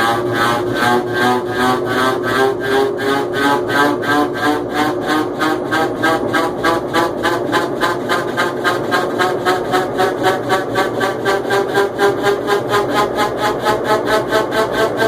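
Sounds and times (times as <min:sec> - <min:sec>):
washing machine pulsing: 0:00.0 - 0:15.0.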